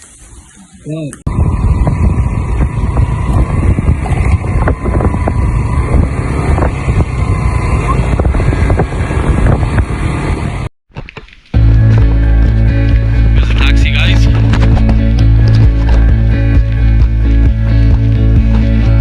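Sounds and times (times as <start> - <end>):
engine running: 1.3 - 10.7, 11.6 - 19.0
wind buffeting microphone: 1.3 - 10.7
scattered knocks: 14.3 - 16.2.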